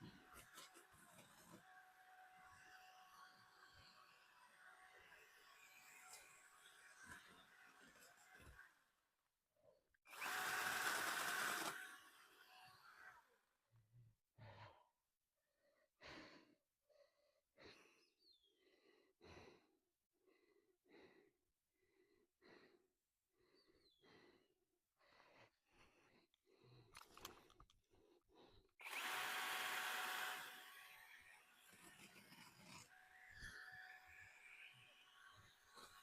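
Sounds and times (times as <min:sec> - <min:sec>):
cordless power saw running: 0:10.1 - 0:12.8, 0:28.8 - 0:32.3.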